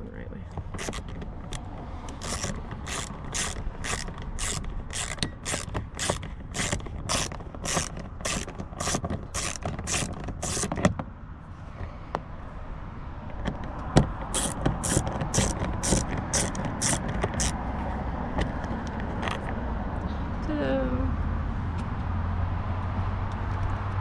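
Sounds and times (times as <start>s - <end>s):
ratchet clicking: 0.6s - 10.9s, 14.3s - 17.7s.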